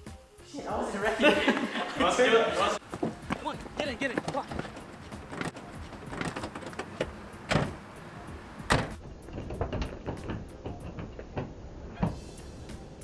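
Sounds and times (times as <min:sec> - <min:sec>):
clicks and knocks: 0:04.2 - 0:07.9.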